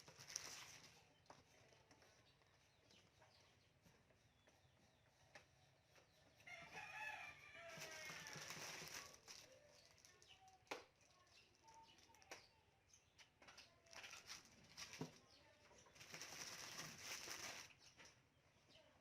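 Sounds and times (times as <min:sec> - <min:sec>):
packaging rustling: 0:00.0 - 0:01.0, 0:07.6 - 0:10.6, 0:16.0 - 0:17.8.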